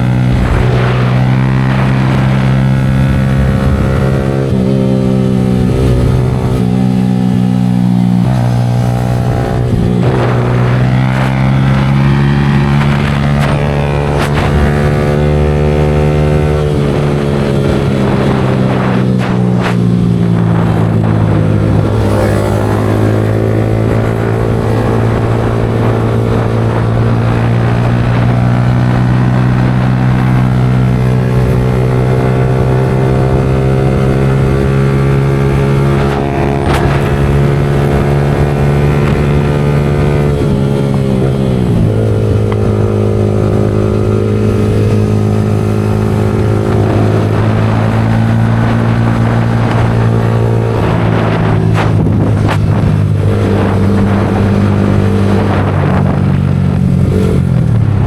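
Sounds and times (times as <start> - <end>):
motorcycle engine running: 0.0 - 58.0.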